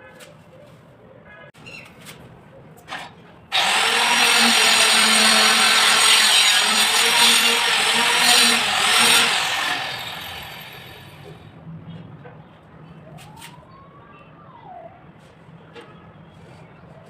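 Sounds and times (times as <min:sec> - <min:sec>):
electric power tool running: 0:03.5 - 0:11.4.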